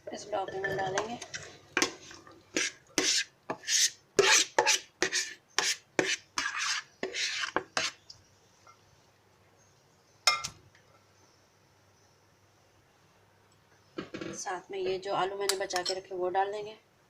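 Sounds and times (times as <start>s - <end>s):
spoon scraping a pot: 0.2s - 8.0s.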